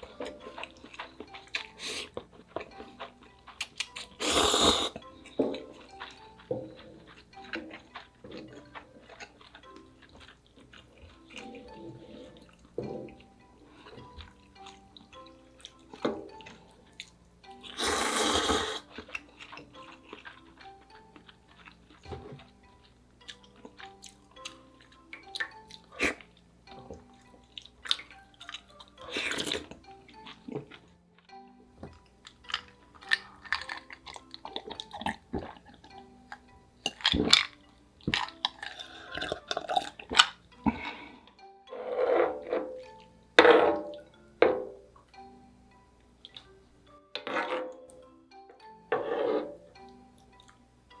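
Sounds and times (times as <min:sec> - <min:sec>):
quiet background music: 0:00.0 - 0:51.0
wet slurping: 0:04.1 - 0:05.1, 0:17.7 - 0:19.0, 0:29.0 - 0:29.8.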